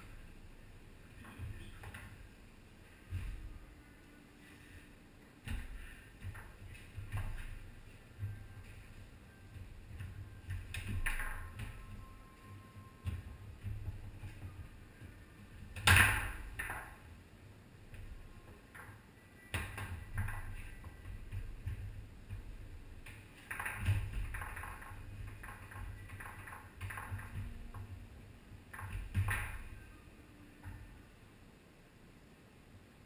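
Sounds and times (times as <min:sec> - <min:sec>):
foosball ball clacking: 0:10.4 - 0:12.0, 0:15.7 - 0:17.1, 0:18.7 - 0:27.9, 0:28.7 - 0:29.9
foosball rods rattling: 0:10.5 - 0:11.8, 0:22.5 - 0:27.9.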